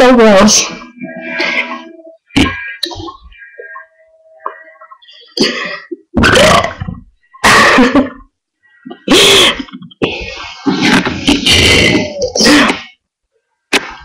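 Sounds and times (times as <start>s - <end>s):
person burping loudly: 5.4s - 8.2s, 11.2s - 12.9s.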